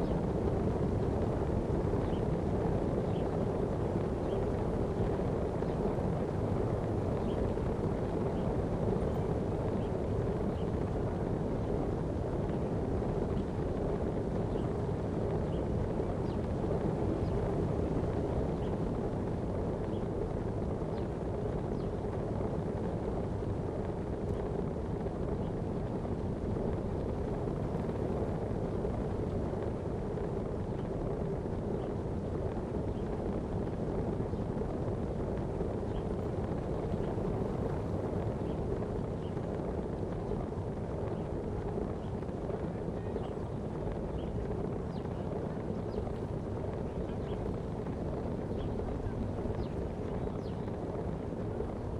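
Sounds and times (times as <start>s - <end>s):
constant low hum: 0.0s - 51.9s
wind noise on microphone: 0.0s - 51.9s.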